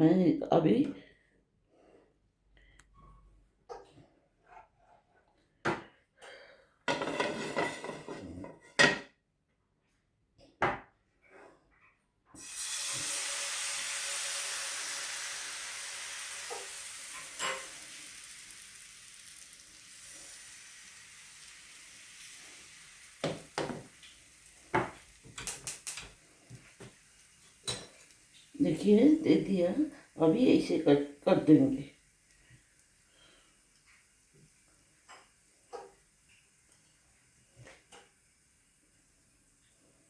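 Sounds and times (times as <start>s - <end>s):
utensils clattering against pan: 6.9s - 9.1s, 17.2s - 17.8s
batter sizzling in hot pan: 12.4s - 40.0s.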